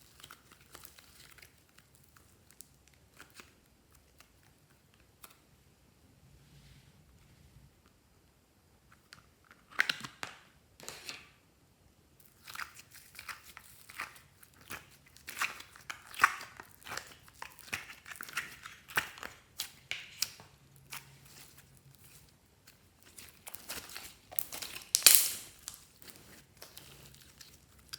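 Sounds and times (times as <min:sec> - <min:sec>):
slime crunching and crackling: 0:00.0 - 0:05.3, 0:12.2 - 0:27.9.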